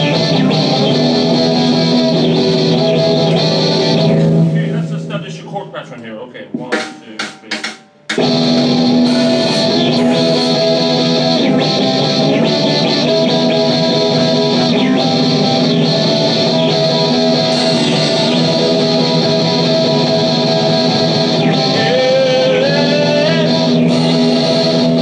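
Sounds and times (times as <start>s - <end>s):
electric guitar playing chords: 0.0s - 5.7s, 7.9s - 25.0s.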